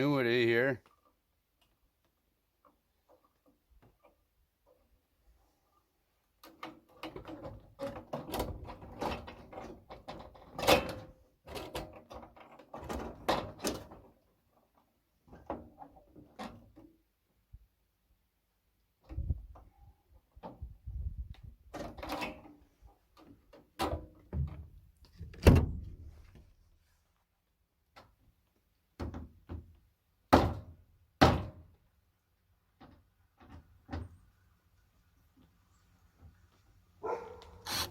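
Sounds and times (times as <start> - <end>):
knocking and rattling on gutter: 6.4 - 14.2, 23.2 - 26.0, 29.0 - 31.8.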